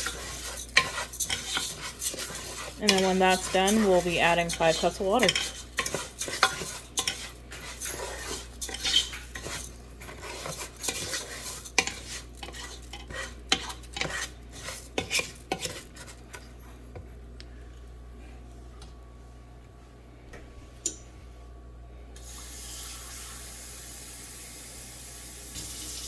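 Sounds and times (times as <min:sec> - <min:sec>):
utensil scraping a pot: 0:00.0 - 0:16.4.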